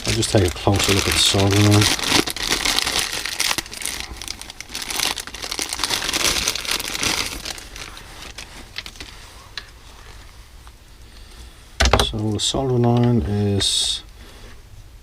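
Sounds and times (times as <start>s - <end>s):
packaging crinkling and rustling: 0.0s - 10.3s.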